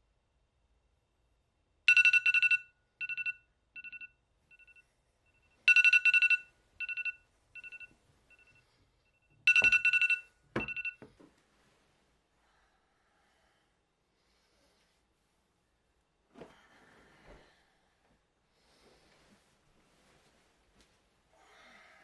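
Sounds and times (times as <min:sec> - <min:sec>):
phone alarm beeping: 0:01.9 - 0:11.1.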